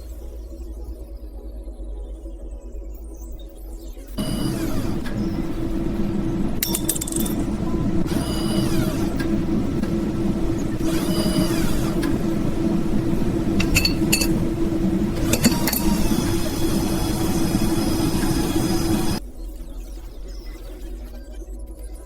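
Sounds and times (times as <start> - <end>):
machine hum: 4.2 - 19.2
short whining tones: 4.2 - 19.2
light clinks: 13.6 - 14.5.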